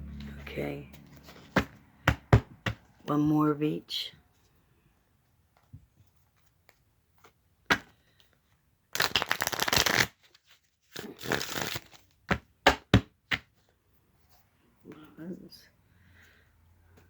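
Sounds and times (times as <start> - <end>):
cards riffling: 9.0 - 12.2.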